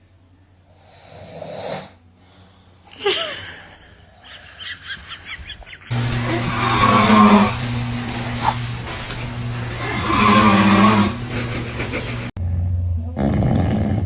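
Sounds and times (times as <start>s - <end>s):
music: 0.0s - 4.2s, 12.4s - 14.0s
snore: 0.7s - 2.0s, 9.8s - 11.2s, 13.2s - 14.0s.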